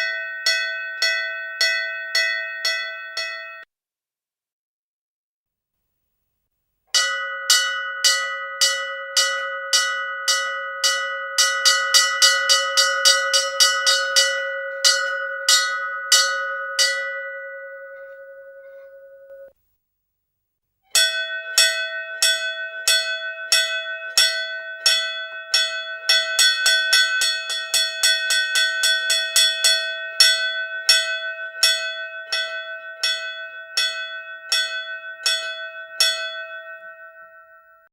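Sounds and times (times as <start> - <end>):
temple bell ringing: 0.0 - 3.7, 7.0 - 19.5, 21.0 - 37.9
higher-pitched bell ringing: 7.0 - 19.5.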